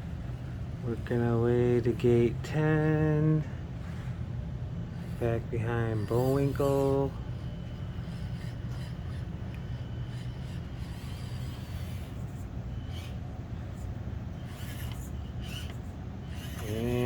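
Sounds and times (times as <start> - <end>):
rc car motor humming: 0.0 - 17.0.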